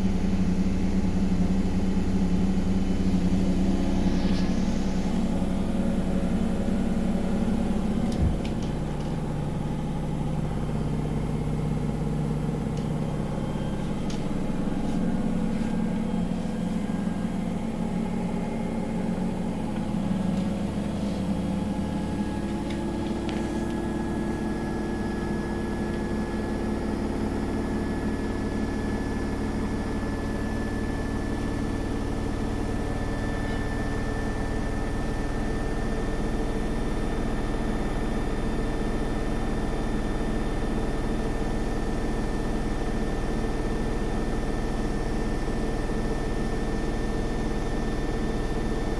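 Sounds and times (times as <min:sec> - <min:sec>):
washing machine running: 0:00.0 - 0:48.9
thin high motor whine: 0:03.1 - 0:06.7.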